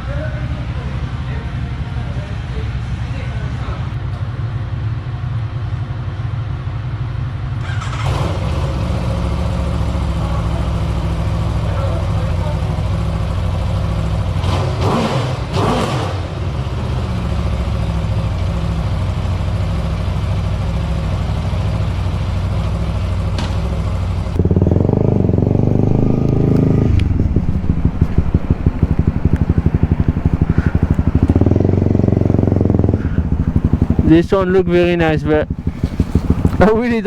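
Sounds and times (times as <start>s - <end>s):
motorcycle engine running: 7.5s - 37.0s.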